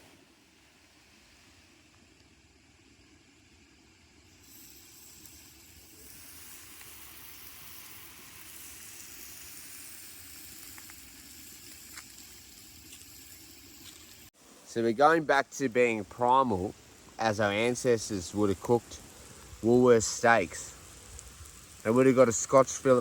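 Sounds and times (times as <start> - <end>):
steak sizzling on hot stone: 4.2 - 14.3, 15.8 - 23.0
small pops: 10.5 - 13.2.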